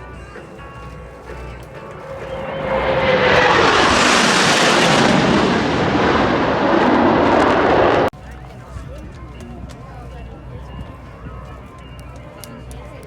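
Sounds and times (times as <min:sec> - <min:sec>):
military jet passing low: 0:00.0 - 0:08.1.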